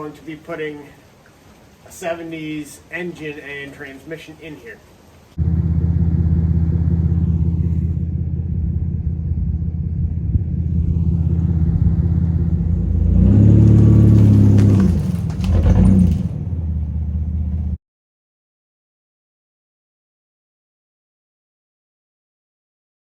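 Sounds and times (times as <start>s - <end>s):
vehicle engine idling and revving: 5.4s - 17.8s.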